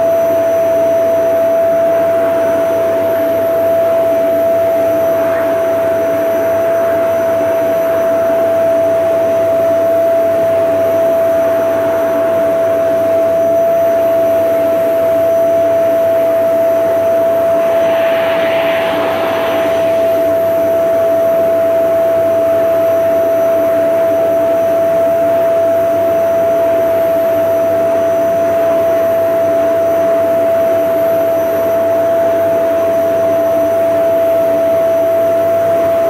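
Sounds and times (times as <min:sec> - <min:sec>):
vacuum cleaner running: 0:16.8 - 0:21.2.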